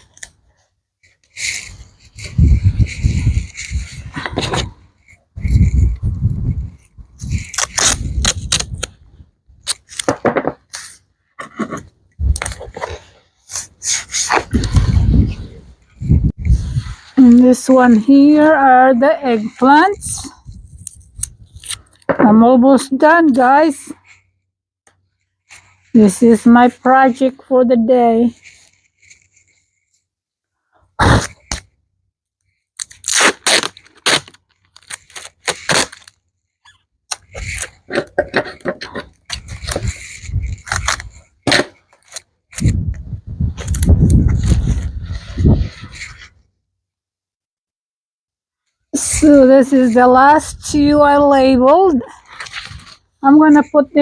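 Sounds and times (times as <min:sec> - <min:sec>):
plastic crinkling and rustling: 0:32.5 - 0:42.7, 0:52.1 - 0:53.8.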